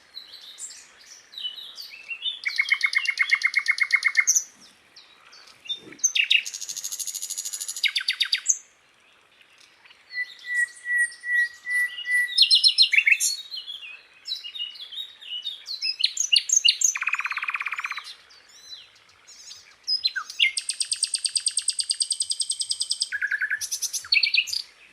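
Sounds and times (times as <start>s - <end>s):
flycatcher singing trills and whistles: 0.1s - 4.5s, 5.4s - 8.7s, 9.8s - 24.8s
lower rattling bird trill: 16.1s - 24.7s.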